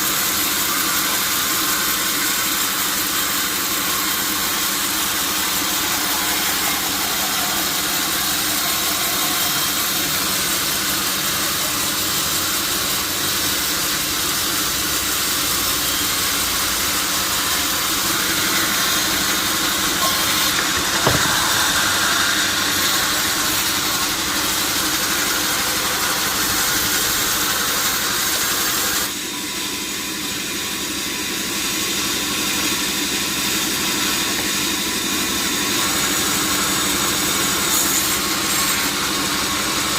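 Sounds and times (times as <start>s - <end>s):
sawmill saw machinery running: 0.0s - 39.9s
sharp knock: 20.0s - 22.2s.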